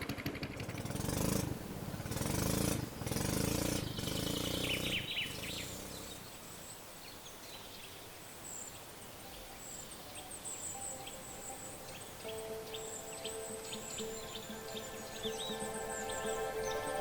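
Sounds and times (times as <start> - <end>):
motor engine running: 0.0 - 6.3
high-pitched chirping calls: 8.6 - 17.0.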